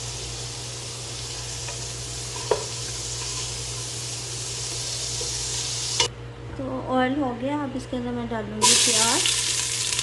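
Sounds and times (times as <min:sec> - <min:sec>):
oil sizzling: 0:00.0 - 0:06.1, 0:08.6 - 0:10.0.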